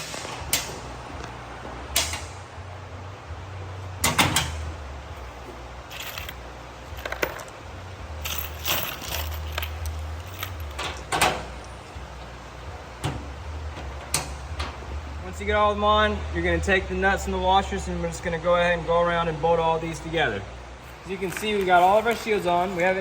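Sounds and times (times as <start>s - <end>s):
low hum: 0.0s - 21.0s
steel bolts clinking: 5.9s - 7.6s, 8.2s - 11.7s.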